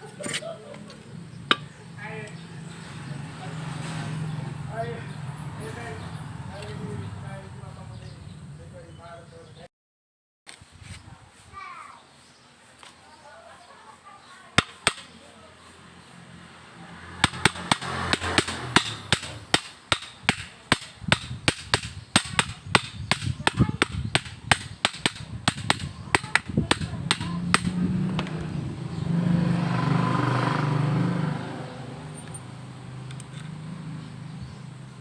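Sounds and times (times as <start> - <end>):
sharp metal tapping: 1.4 - 2.4, 14.6 - 15.3, 17.2 - 28.5.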